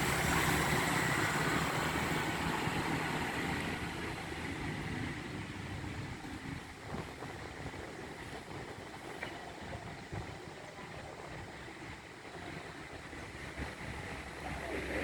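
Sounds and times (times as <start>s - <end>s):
river rushing: 0.0s - 5.2s.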